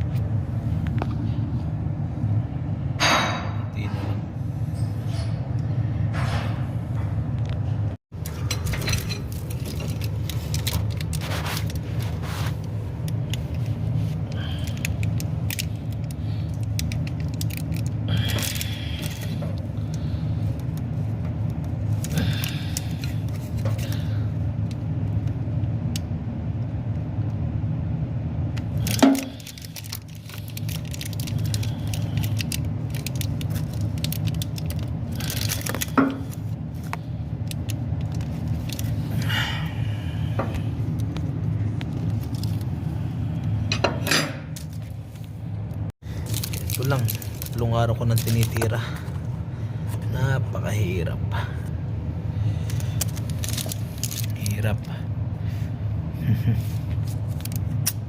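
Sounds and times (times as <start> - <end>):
low engine rumble: 0.0 - 58.0
wire cable jangling and scraping: 8.2 - 12.6.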